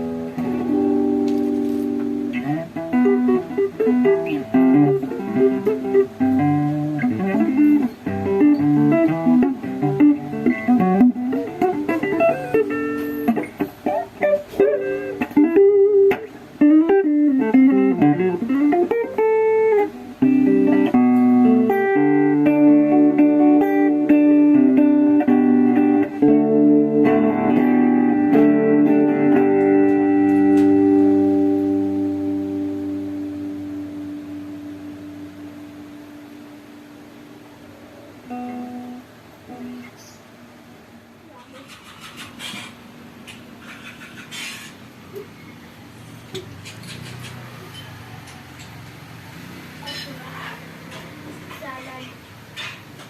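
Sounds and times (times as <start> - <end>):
guitar single-note line with bends: 0.0 - 40.3
guitar chords ringing: 0.0 - 41.2.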